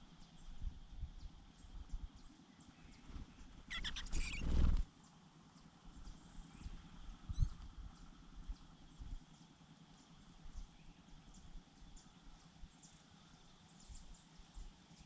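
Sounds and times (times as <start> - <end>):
faint thin high bird calls: 2.2 - 4.8, 6.0 - 8.1
rustling and high chirping: 3.0 - 4.9.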